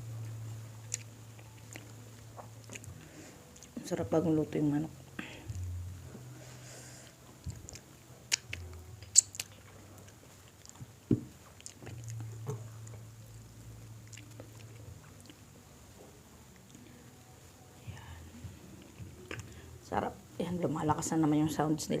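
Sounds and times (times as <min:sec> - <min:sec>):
mouth clicks: 0:07.4 - 0:09.6
crunching fried chicken: 0:07.4 - 0:10.8.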